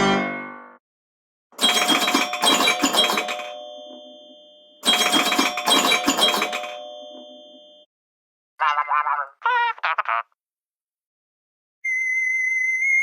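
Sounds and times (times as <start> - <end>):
phone ringtone: 1.6 - 7.9.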